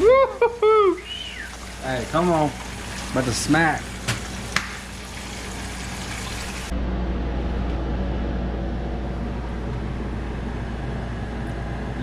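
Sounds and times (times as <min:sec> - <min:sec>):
food sizzling as it fries: 0:01.0 - 0:06.7
steady low rumble: 0:06.7 - 0:12.0.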